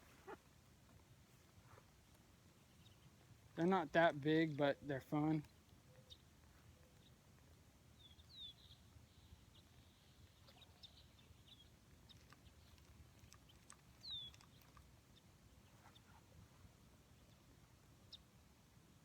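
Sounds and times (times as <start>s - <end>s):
tiny bird chirps: 14.0s - 14.8s.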